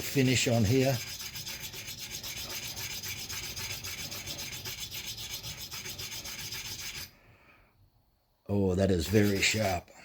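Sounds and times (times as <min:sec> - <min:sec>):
stone scraping axe edge: 0:00.0 - 0:07.1, 0:09.0 - 0:09.8.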